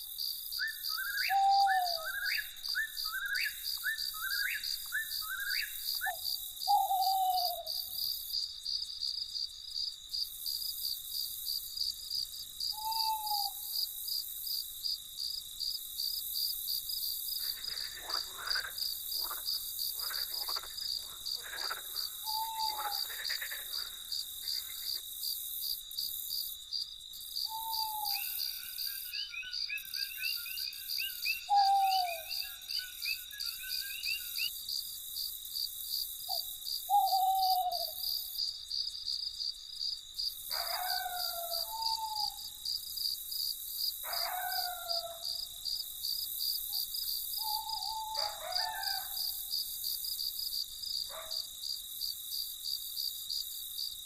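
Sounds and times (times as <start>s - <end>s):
crickets chirping: 0.0s - 54.0s
rapid chittering calls: 17.3s - 25.1s.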